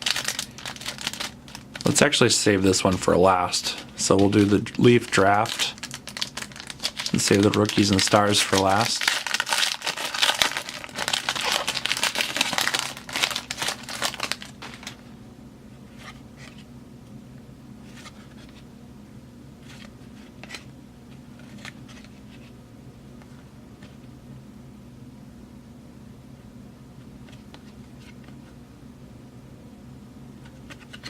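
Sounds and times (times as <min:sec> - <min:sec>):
cards being handled: 0:00.0 - 0:02.0, 0:02.7 - 0:15.1, 0:19.6 - 0:22.6, 0:30.4 - 0:31.0
foil wrapper crinkling and tearing: 0:00.0 - 0:03.0, 0:03.6 - 0:15.0
low steady hum: 0:00.0 - 0:31.0.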